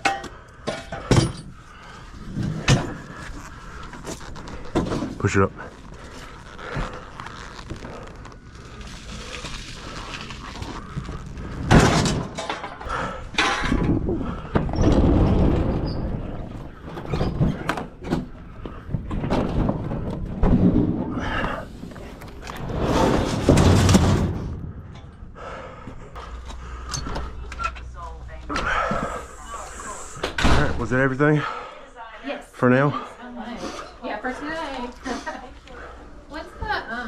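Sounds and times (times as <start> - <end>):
refrigerator being pushed and shifted: 13.4 - 24.6.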